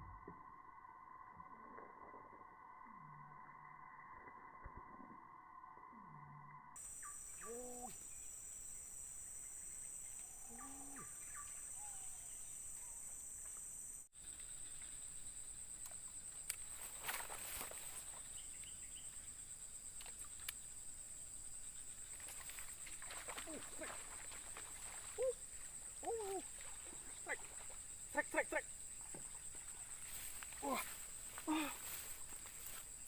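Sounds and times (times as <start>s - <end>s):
insects buzzing: 6.8s - 33.0s
short low calls: 7.3s - 8.1s, 25.1s - 28.7s.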